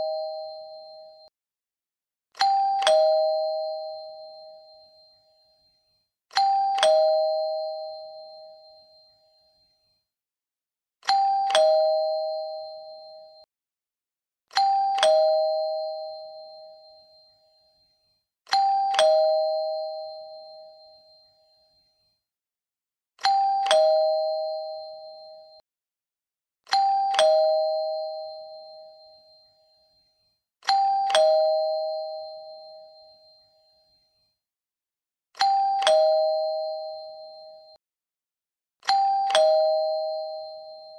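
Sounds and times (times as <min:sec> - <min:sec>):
two-note doorbell chime: 0:00.0 - 0:01.3, 0:02.4 - 0:10.1, 0:11.0 - 0:13.5, 0:14.5 - 0:22.2, 0:23.2 - 0:25.6, 0:26.7 - 0:34.3, 0:35.4 - 0:37.8, 0:38.8 - 0:40.9
doorbell click: 0:02.4 - 0:03.3, 0:11.1 - 0:11.9, 0:35.4 - 0:36.4, 0:38.9 - 0:40.6.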